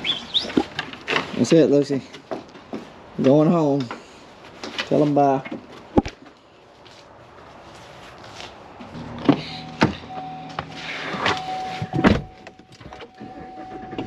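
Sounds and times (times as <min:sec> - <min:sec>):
vehicle engine idling: 0:08.9 - 0:12.4
high warning tone: 0:08.9 - 0:14.0.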